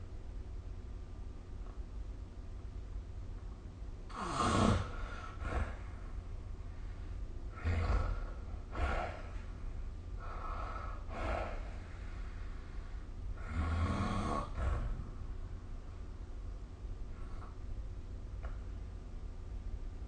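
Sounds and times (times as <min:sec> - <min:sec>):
person snoring: 0:04.1 - 0:05.9, 0:07.5 - 0:09.4, 0:13.4 - 0:15.1.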